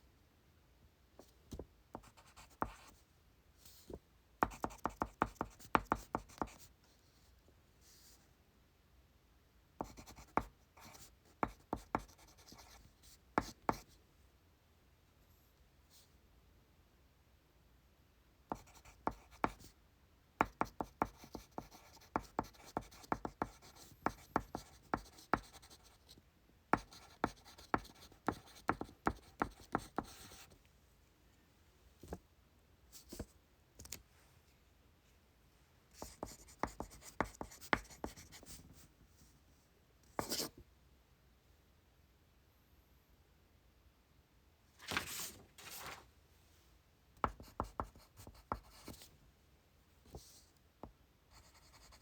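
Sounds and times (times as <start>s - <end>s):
pencil writing on paper: 2.0s - 2.9s, 4.4s - 6.7s, 9.8s - 12.8s, 18.5s - 19.7s, 20.4s - 26.1s, 26.8s - 30.5s, 36.0s - 38.6s, 40.2s - 40.5s, 47.3s - 49.1s, 51.3s - 52.0s.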